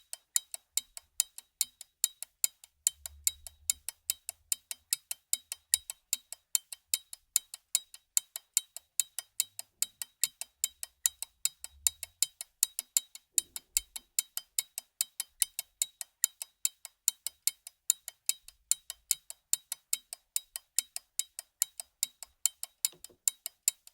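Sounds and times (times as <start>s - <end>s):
pocket watch ticking: 0.0s - 23.9s.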